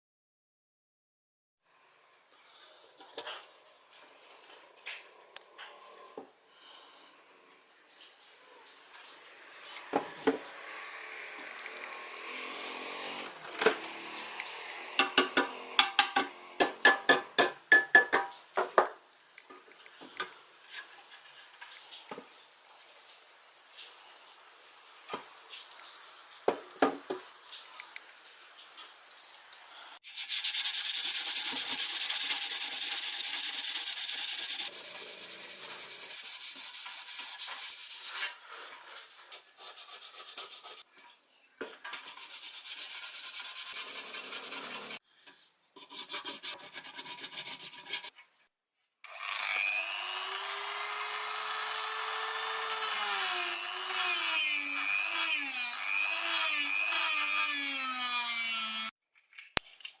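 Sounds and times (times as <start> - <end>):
scratchy rubbing or sanding: 30.0 - 38.4, 39.3 - 40.8, 42.0 - 45.0, 45.8 - 48.2.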